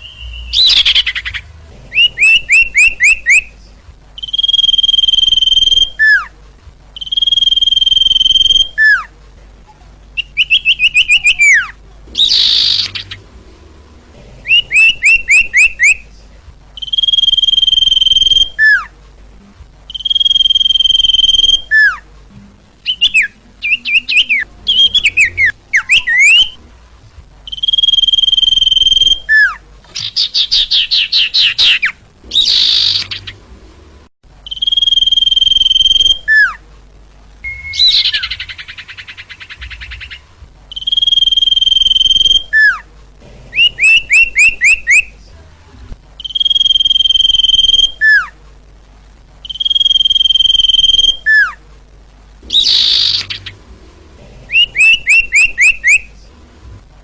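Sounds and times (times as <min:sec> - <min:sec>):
bird song whistles and trills: 0:00.0 - 0:03.5, 0:04.2 - 0:06.3, 0:07.0 - 0:09.1, 0:10.2 - 0:13.2, 0:14.4 - 0:16.0, 0:16.8 - 0:18.9, 0:19.9 - 0:22.0, 0:22.8 - 0:26.6, 0:27.5 - 0:33.4, 0:34.4 - 0:36.6, 0:37.4 - 0:42.9, 0:43.6 - 0:45.1, 0:46.2 - 0:48.3, 0:49.4 - 0:51.6, 0:52.5 - 0:53.6, 0:54.5 - 0:56.1.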